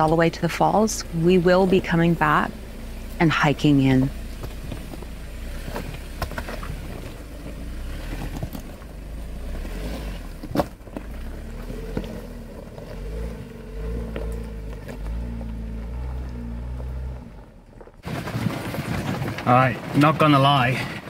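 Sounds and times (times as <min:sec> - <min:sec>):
engine and road rumble: 0:00.0 - 0:21.0
sharp knocks and rattles: 0:02.4 - 0:09.7, 0:17.7 - 0:21.0.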